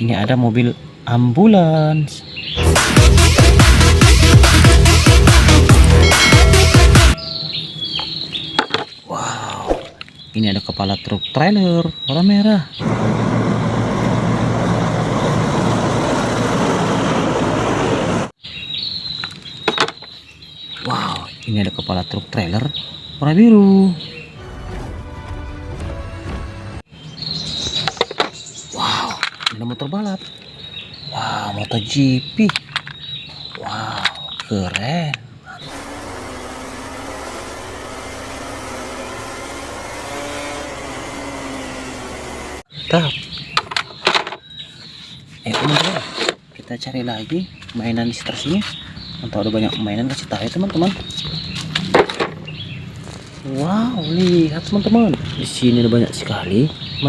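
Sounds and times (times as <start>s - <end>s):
motor vehicle rumbling: 12.7s - 18.4s, 24.2s - 57.0s
insects chirping: 18.4s - 23.4s, 27.0s - 36.8s
motorcycle engine at high revs: 35.6s - 42.7s.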